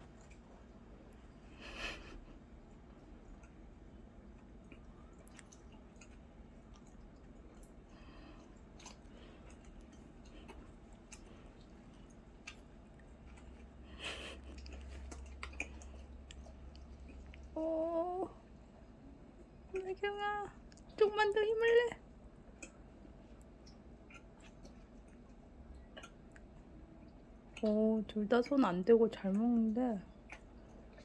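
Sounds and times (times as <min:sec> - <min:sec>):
wet chewing sounds: 0:00.0 - 0:20.0, 0:20.6 - 0:21.0, 0:22.0 - 0:31.0
small mouth clicks: 0:25.8 - 0:26.5.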